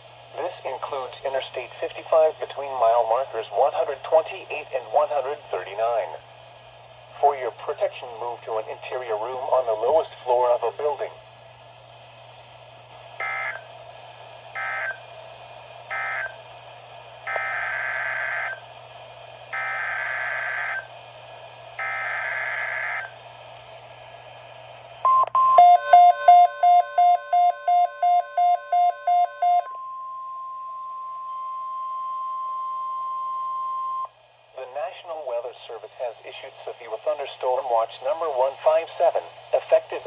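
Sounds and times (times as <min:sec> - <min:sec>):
steady alarm tone: 0:25.1 - 0:29.9
rapid electronic beeping: 0:25.6 - 0:29.7.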